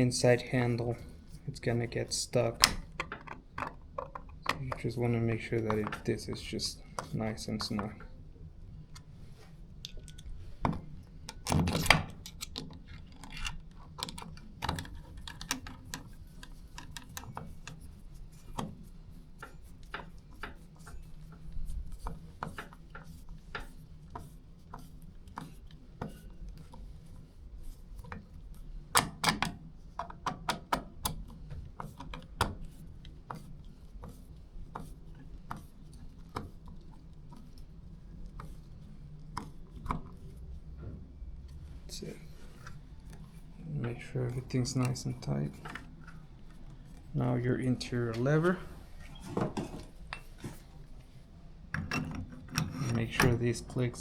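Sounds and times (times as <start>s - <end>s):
screwdriver clicking and scraping metal: 11.3s - 17.8s, 51.8s - 54.0s.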